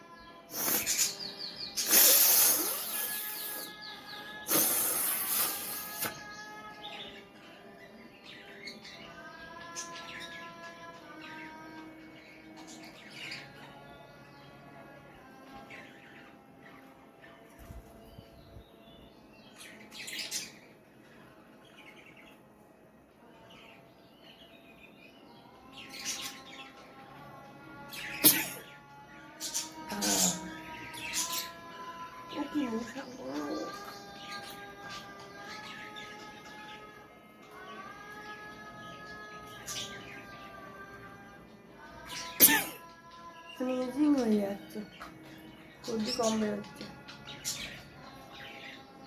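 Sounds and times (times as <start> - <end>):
birds chirping faintly: 0.0 - 49.0
woman blowing her nose: 1.9 - 3.7, 4.5 - 6.1.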